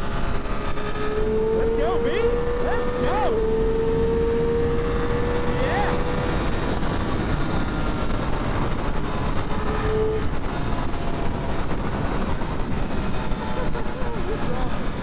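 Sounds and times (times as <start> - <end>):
motorcycle engine running: 0.0 - 15.0
wind rushing over microphone: 0.0 - 15.0.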